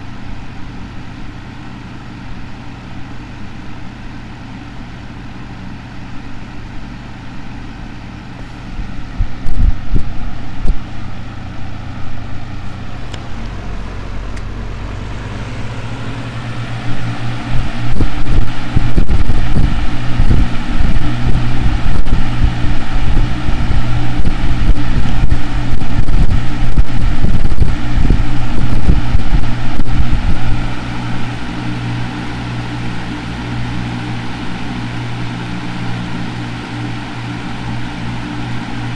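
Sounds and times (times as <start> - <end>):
fan motor hum: 0.0 - 38.9
wind buffeting microphone: 9.1 - 10.9, 15.0 - 31.6.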